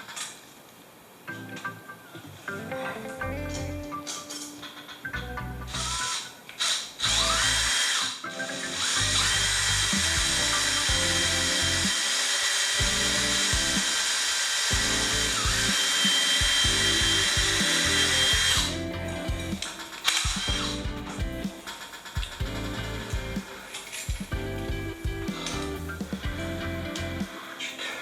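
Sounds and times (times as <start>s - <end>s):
background music: 1.2s - 28.0s
power drill boring into wood: 5.8s - 8.2s, 8.8s - 18.8s.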